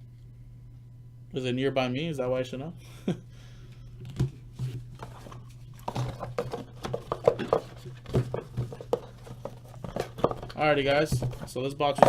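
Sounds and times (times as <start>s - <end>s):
low hum: 0.0s - 12.0s
cards being handled on a table: 4.1s - 11.5s.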